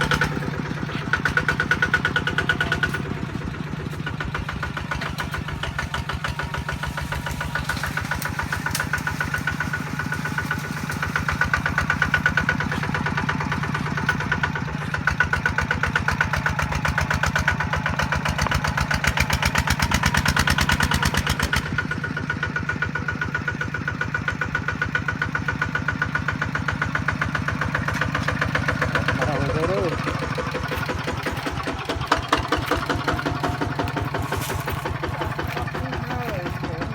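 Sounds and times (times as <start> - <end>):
diesel engine running: 0.0 - 36.9.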